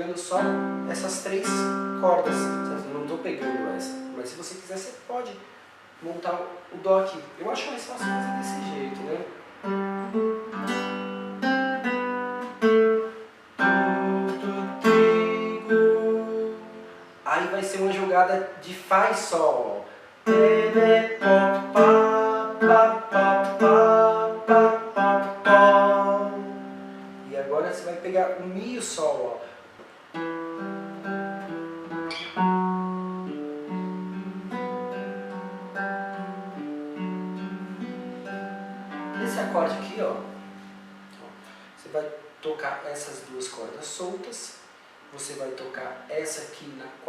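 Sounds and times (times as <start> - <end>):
acoustic guitar plucked chords: 0.0 - 4.4, 7.9 - 28.8, 30.1 - 41.8.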